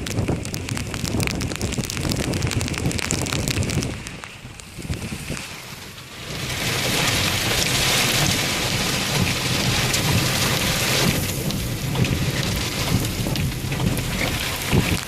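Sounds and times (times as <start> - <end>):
heavy rain: 0.0 - 15.0
low rumble: 0.0 - 15.0.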